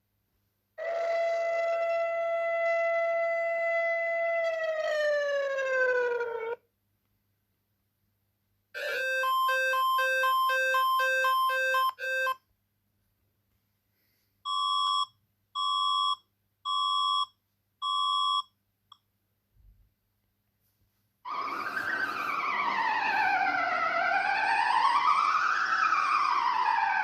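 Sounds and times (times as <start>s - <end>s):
long electronic beeps: 8.8s - 12.4s
two-pitch alert warble: 8.8s - 12.4s.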